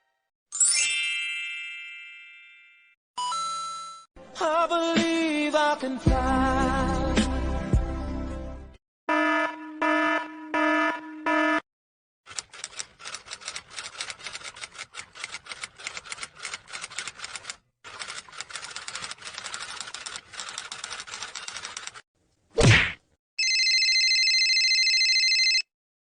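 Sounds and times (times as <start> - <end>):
pulsing electronic alarm beep: 9.1 - 11.6
rapid typing on keys: 12.3 - 22.0.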